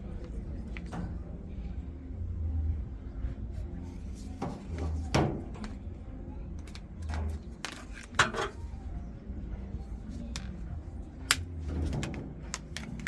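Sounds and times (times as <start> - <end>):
steady low hum: 0.0 - 13.0
washing machine panels knocking: 4.4 - 5.8, 8.2 - 8.6, 11.7 - 12.9.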